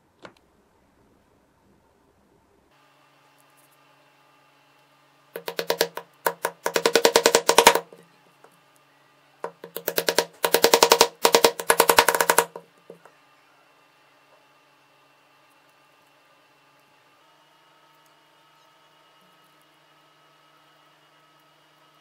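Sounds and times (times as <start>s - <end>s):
tool chattering against wood: 5.4s - 8.0s, 9.4s - 12.6s.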